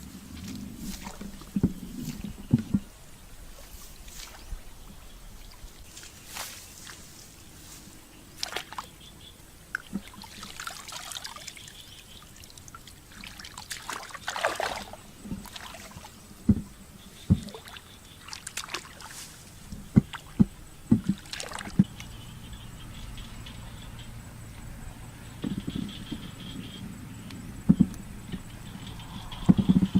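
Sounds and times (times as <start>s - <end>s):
shallow water splashing: 0.4s - 2.9s, 8.4s - 8.9s, 9.7s - 22.6s.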